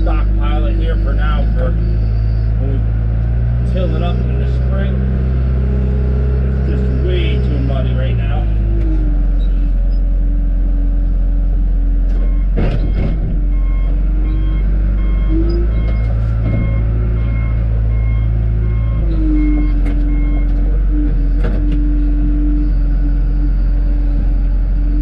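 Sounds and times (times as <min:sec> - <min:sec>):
diesel engine running: 0:00.0 - 0:25.0
reverse alarm beeping: 0:12.2 - 0:23.8.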